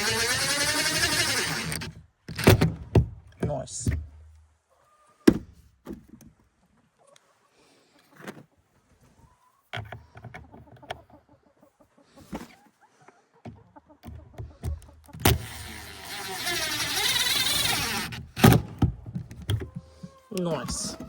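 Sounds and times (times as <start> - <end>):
chickens clucking: 6.6 - 15.2, 19.4 - 21.0
knocks and clicks of handling: 18.1 - 20.1.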